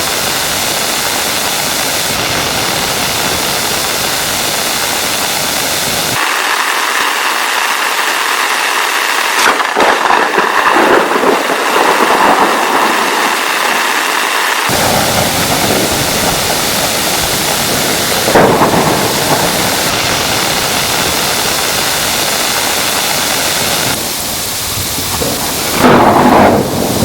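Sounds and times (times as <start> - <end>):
thunder crack and rumbling: 0.0 - 6.2, 9.5 - 27.0
heavy rain falling: 0.0 - 27.0.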